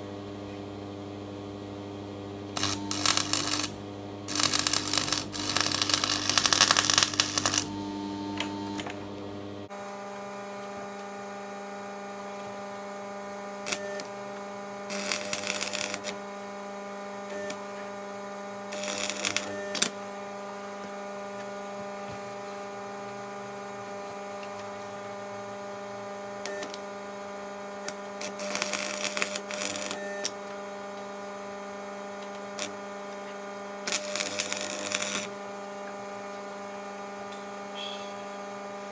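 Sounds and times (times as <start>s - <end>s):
arc welder humming: 0.0s - 38.9s
welding arc crackling: 2.5s - 9.0s, 13.6s - 14.1s, 14.8s - 16.3s, 18.7s - 20.1s, 26.3s - 31.1s, 32.1s - 32.9s, 33.7s - 35.7s.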